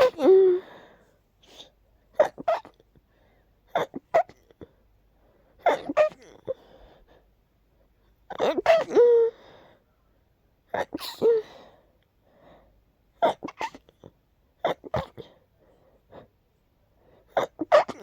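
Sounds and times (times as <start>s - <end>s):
person sneezing: 0.0s - 0.3s, 10.8s - 11.4s, 13.2s - 13.8s, 17.3s - 18.0s
faint breaths: 0.3s - 2.0s, 2.9s - 3.7s, 6.4s - 8.2s, 9.3s - 10.3s, 11.4s - 13.0s, 15.2s - 17.4s.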